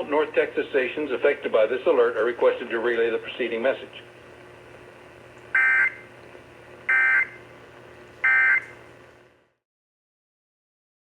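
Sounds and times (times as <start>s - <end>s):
radio hiss and hum: 0.0s - 9.4s
buzzy alert data tones: 5.5s - 6.0s, 6.9s - 7.4s, 8.2s - 8.7s.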